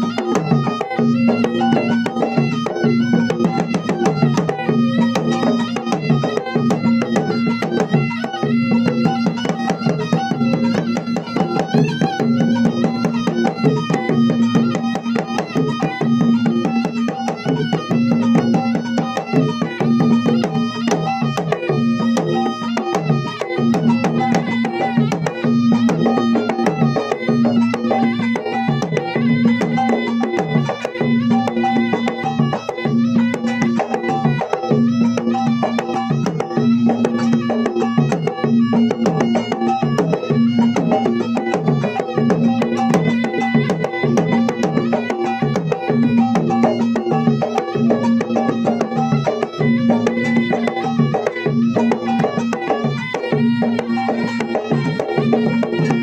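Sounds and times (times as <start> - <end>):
drums playing fast rhythm: 0.0 - 56.0
pitch-bending melody: 0.0 - 56.0
steady held tone: 0.0 - 56.0.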